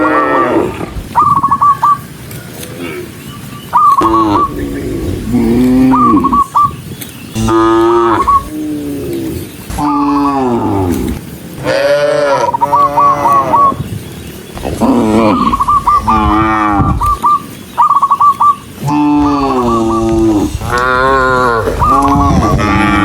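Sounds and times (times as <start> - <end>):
cows mooing: 0.0 - 1.0, 4.0 - 6.4, 7.4 - 13.8, 14.6 - 17.2, 18.8 - 23.0.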